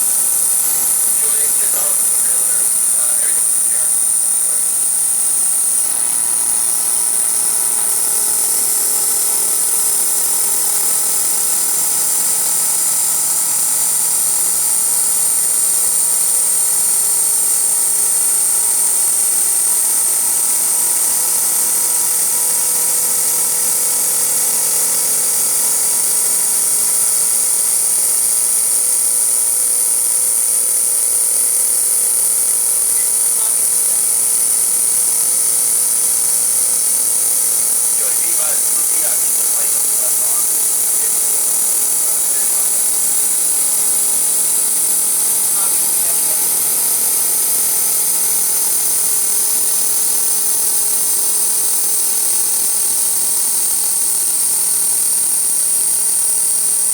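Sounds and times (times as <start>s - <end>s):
milling machine whining: 0.0s - 56.9s.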